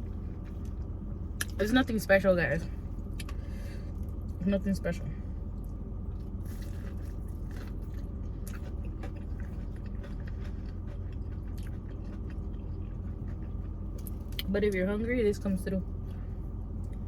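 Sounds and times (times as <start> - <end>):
low hum: 0.0 - 17.0
person chewing fried chicken: 5.4 - 14.5.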